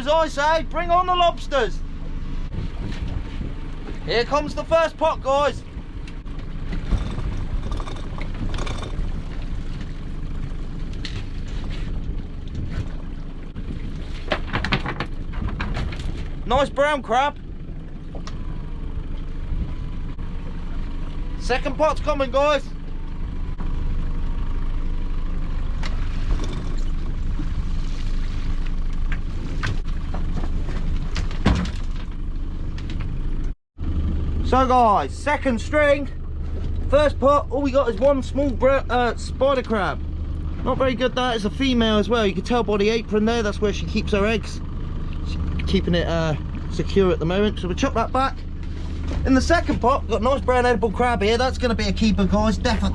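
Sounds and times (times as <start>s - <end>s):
boat engine running: 0.0s - 52.9s
sharp knocks and clatter: 6.6s - 9.2s, 14.2s - 16.3s
rope and gear rattling: 6.7s - 9.8s.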